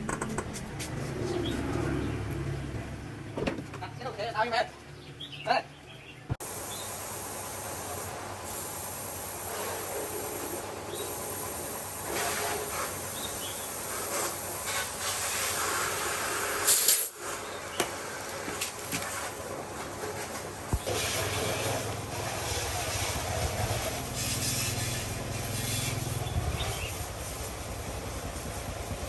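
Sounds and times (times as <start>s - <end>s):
air hissing: 6.4s - 17.5s, 20.7s - 29.0s.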